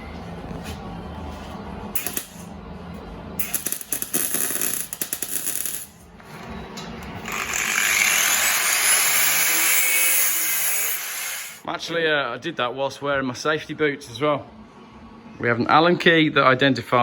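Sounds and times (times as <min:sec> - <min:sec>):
power tool rattling crackle: 0:02.0 - 0:02.4, 0:03.4 - 0:06.0, 0:07.2 - 0:11.6
grinder grinding hiss: 0:07.2 - 0:11.6.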